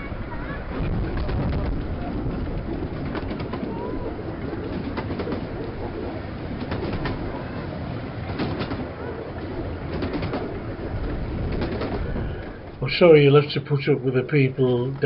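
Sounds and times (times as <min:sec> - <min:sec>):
train wheels rumbling: 0:00.0 - 0:15.0
clicks and knocks from track: 0:08.3 - 0:08.9.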